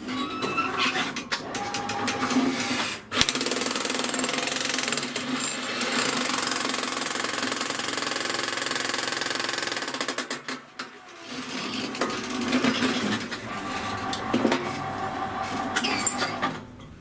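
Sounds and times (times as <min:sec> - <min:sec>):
jackhammer hammering: 0:03.1 - 0:10.5.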